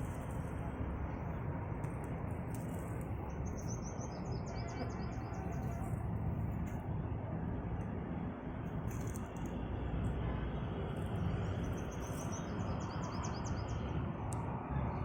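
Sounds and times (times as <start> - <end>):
steady rushing noise: 0.0 - 15.0.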